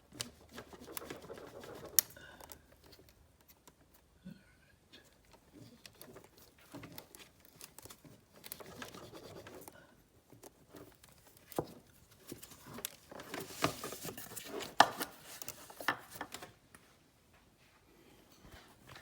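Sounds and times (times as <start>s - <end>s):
plastic parts clicking and knocking: 5.2s - 16.5s.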